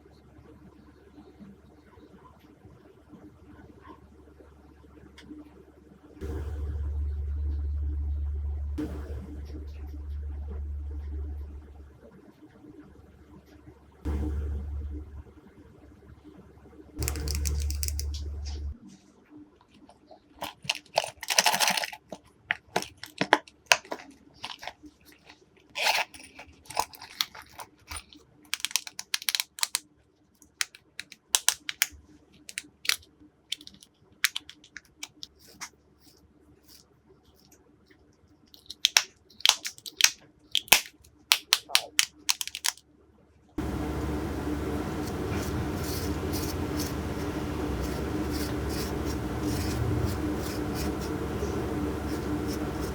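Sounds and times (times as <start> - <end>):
low hum and hiss: 0.0 - 19.2, 43.6 - 52.9.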